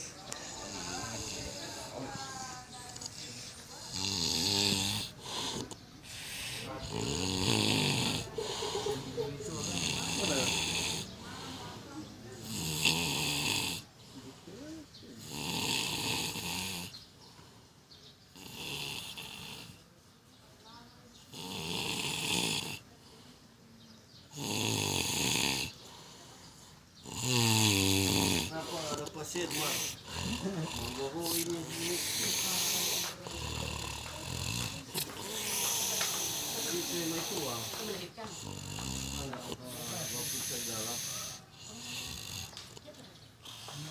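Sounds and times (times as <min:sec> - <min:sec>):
person snoring: 0:03.9 - 0:11.1, 0:12.4 - 0:13.9, 0:27.0 - 0:42.5.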